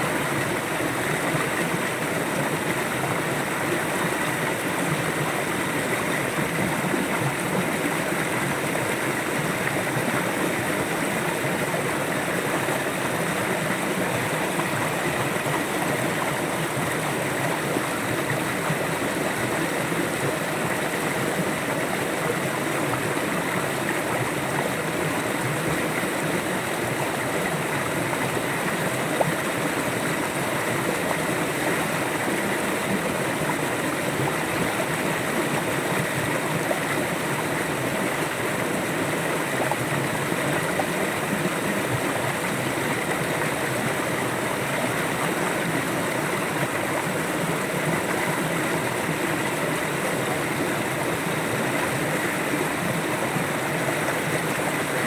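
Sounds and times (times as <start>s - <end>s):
river water flowing: 0.0s - 55.0s.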